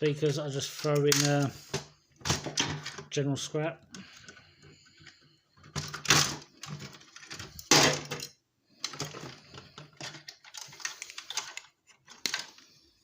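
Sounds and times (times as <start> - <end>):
electronic parts clattering: 0.1 - 3.2, 4.0 - 12.8.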